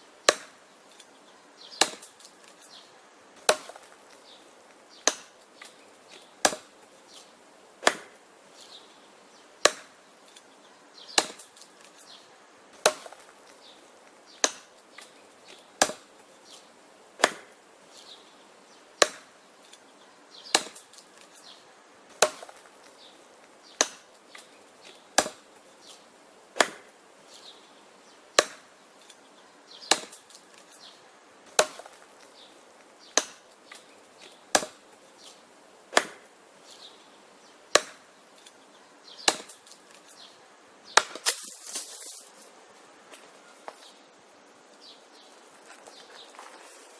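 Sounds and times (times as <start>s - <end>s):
axe chopping wood: 0.2s - 0.6s, 1.7s - 2.6s, 3.4s - 4.2s, 5.0s - 6.8s, 7.8s - 8.2s, 9.6s - 10.4s, 11.1s - 12.0s, 12.8s - 16.2s, 17.2s - 17.6s, 19.0s - 19.8s, 20.5s - 21.3s, 22.1s - 23.0s, 23.7s - 26.0s, 26.6s - 26.9s, 28.3s - 29.1s, 29.8s - 30.7s, 31.5s - 32.3s, 33.0s - 34.9s, 35.9s - 36.3s, 37.7s - 38.1s, 39.2s - 40.1s, 40.9s - 41.9s.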